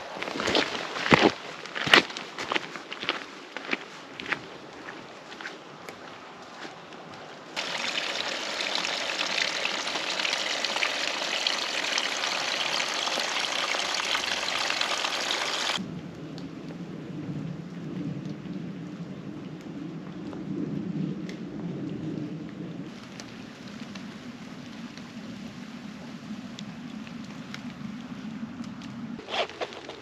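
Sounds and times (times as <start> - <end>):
steady rain falling: 7.6 - 29.0.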